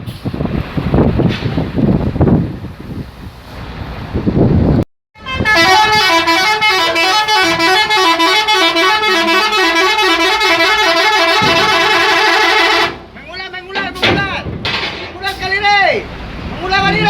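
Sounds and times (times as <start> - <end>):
bus musical horn playing tune: 5.2 - 13.1.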